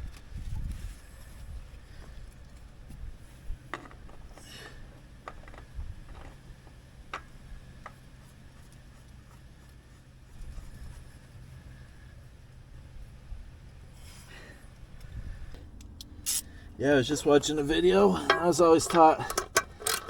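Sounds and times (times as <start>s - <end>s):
faint steady hum: 0.0s - 20.0s
tools clicking and tapping: 18.2s - 20.0s.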